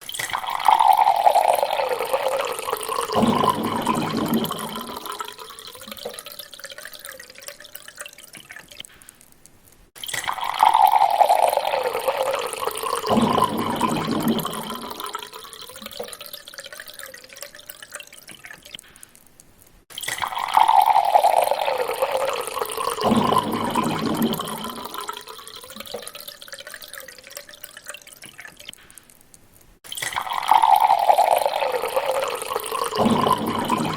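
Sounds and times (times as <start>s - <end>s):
water pouring into a glass: 0.0s - 8.9s, 10.0s - 18.8s, 19.9s - 28.8s, 29.8s - 33.9s.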